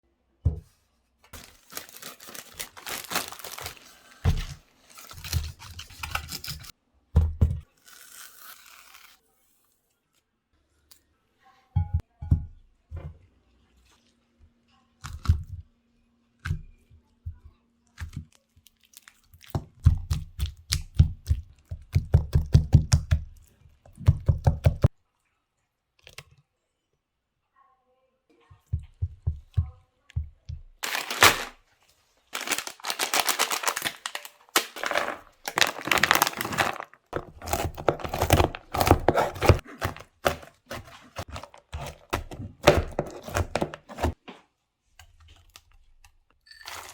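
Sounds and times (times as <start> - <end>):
dense crackling and crinkling: 1.2 - 6.7, 30.4 - 44.3.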